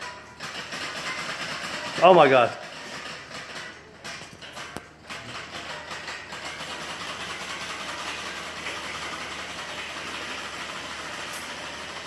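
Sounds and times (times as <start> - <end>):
small engine running: 5.0 - 12.0.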